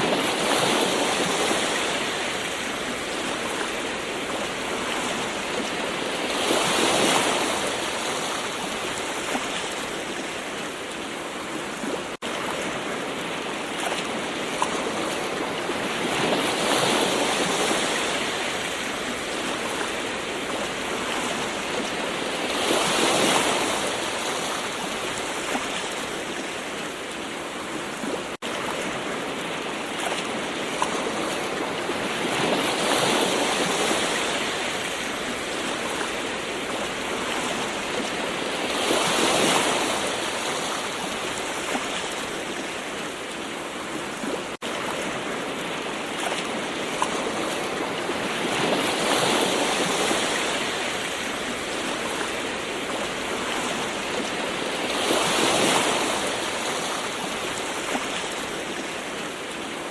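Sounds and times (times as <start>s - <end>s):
ocean waves washing in: 0.0s - 59.9s.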